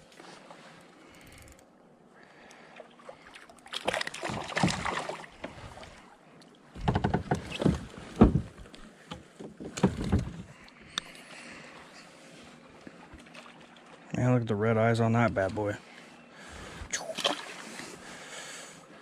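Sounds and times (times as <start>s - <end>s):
knocking and clattering on kayak: 6.8s - 10.5s.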